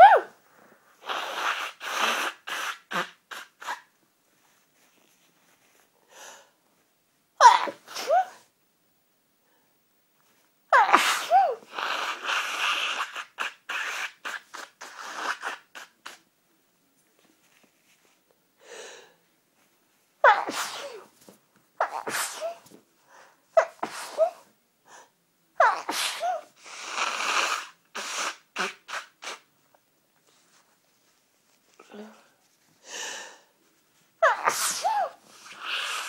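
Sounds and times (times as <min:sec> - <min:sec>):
person sneezing: 0:00.0 - 0:00.4, 0:07.4 - 0:08.5, 0:10.7 - 0:16.2, 0:20.2 - 0:21.2, 0:21.8 - 0:22.7, 0:23.6 - 0:24.5, 0:25.6 - 0:29.5, 0:34.2 - 0:36.0.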